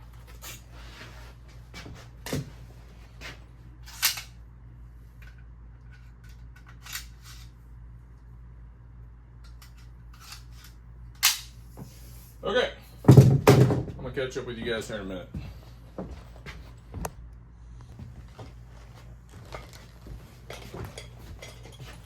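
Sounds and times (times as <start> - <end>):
low steady hum: 0.0 - 22.0
nail gun clicks and snaps: 11.2 - 11.5.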